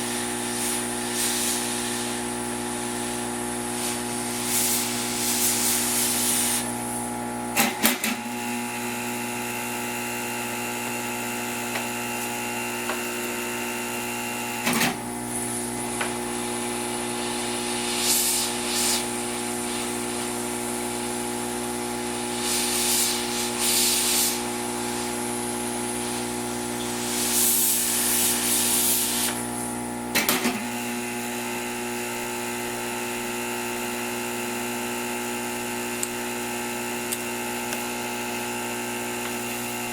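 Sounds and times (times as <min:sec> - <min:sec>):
short bursts of high hiss: 0:00.5 - 0:02.3, 0:17.1 - 0:20.1, 0:22.3 - 0:25.1, 0:26.0 - 0:29.5
small electric motor humming: 0:08.2 - 0:29.8, 0:30.7 - 0:39.9.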